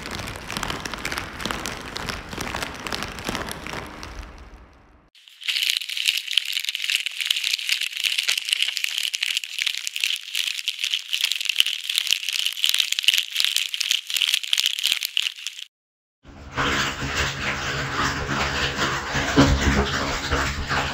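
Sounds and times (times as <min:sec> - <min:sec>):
plastic rattle shaken: 0:00.0 - 0:04.0, 0:05.2 - 0:15.7.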